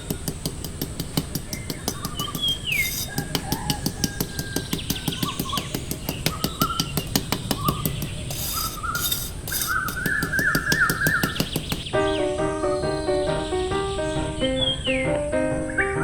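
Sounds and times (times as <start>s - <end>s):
fast ticking beat: 0.0s - 12.2s
birds chirping: 0.0s - 16.0s
melodic music plucked notes: 12.0s - 16.0s.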